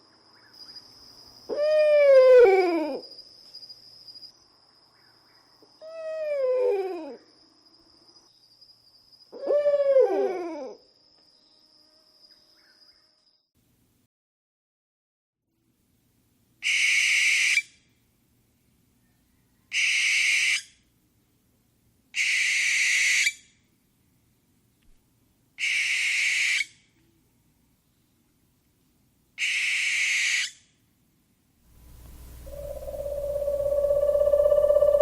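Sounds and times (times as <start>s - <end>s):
owl screeching: 19.7s - 20.6s, 29.4s - 30.6s, 31.8s - 35.0s
steady humming tone: 31.8s - 35.0s.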